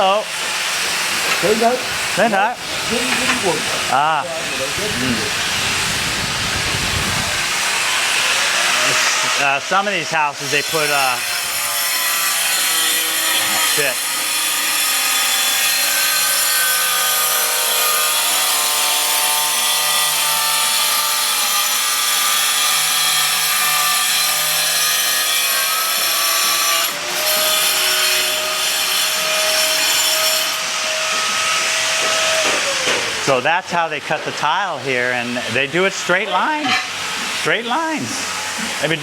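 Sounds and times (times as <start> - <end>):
electric saw cutting tile: 0.0 - 33.4, 34.5 - 39.0.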